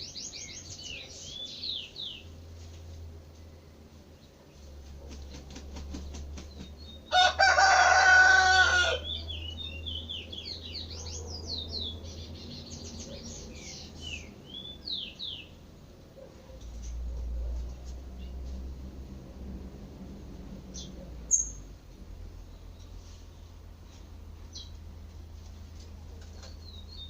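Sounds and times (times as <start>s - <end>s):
songbirds chirping and singing: 0.0s - 18.7s, 20.5s - 24.8s, 25.8s - 27.0s
rooster crowing: 7.1s - 9.4s.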